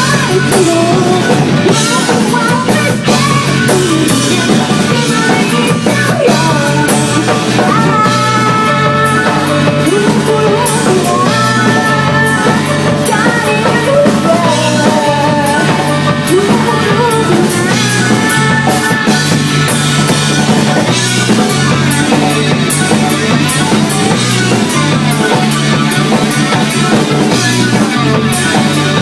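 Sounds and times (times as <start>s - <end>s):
drum kit beat: 0.0s - 29.0s
guitar: 0.0s - 29.0s.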